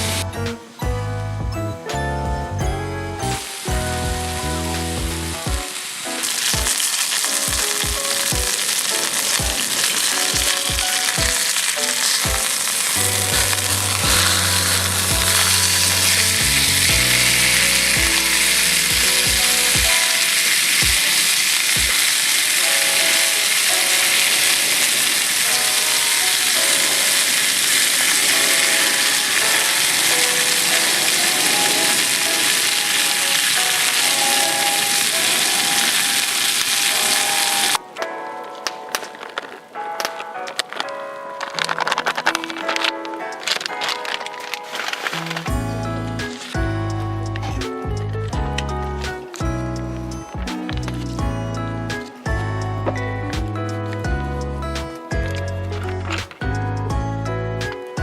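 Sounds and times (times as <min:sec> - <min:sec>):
background music with a beat: 0:00.0 - 0:27.5, 0:42.8 - 0:58.0
food sizzling in a pan: 0:05.6 - 0:37.8.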